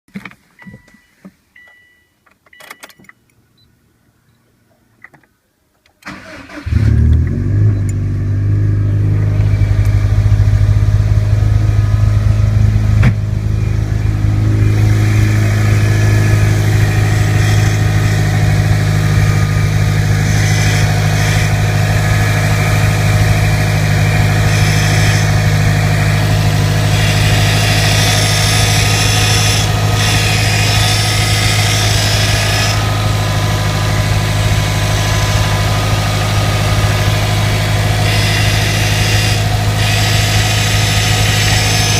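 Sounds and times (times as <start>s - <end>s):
car engine cranking and idling: 5.9s - 41.9s
power steering pump noise: 14.4s - 41.9s.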